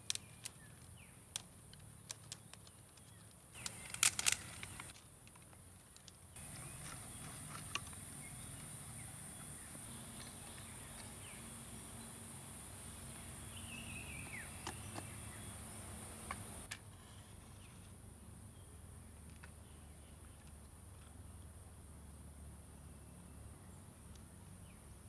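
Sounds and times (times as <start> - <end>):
insects chirring: 3.6 - 4.9, 6.4 - 16.7
sharp clicks: 3.6 - 5.0.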